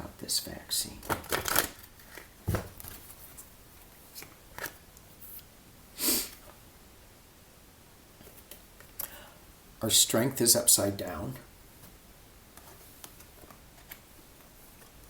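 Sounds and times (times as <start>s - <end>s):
cards clicking and rustling: 1.0s - 3.2s
person sniffing: 6.0s - 6.4s.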